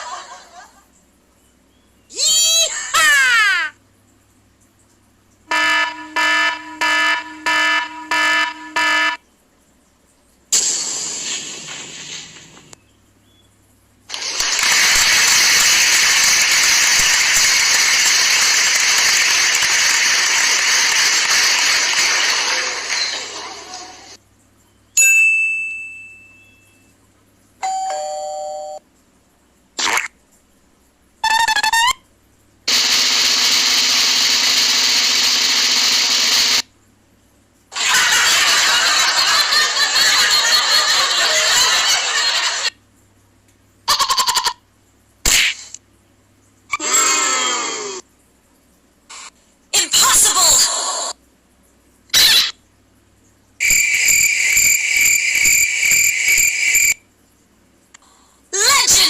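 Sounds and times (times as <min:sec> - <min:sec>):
noisy hiss: 0:10.4 - 0:24.2, 0:32.3 - 0:42.9
bell-like ding: 0:25.0 - 0:26.9
warbling cartoon tone: 0:31.2 - 0:32.0
electronic alarm beeps: 0:53.6 - 0:57.0.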